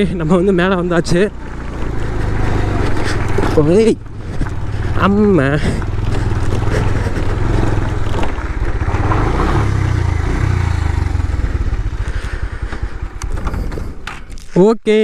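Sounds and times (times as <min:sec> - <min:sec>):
motorcycle engine revving: 0:00.0 - 0:14.5.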